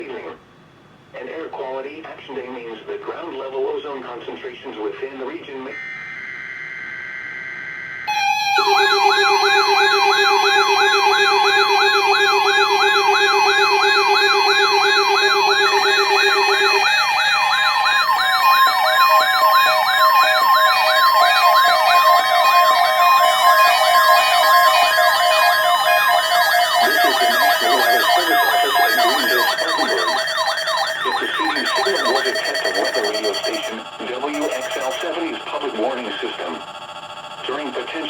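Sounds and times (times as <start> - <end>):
warbling alarm siren: 5.7 - 38.0
beeping tones: 8.1 - 35.4
digital alert-code tones: 8.1 - 35.4.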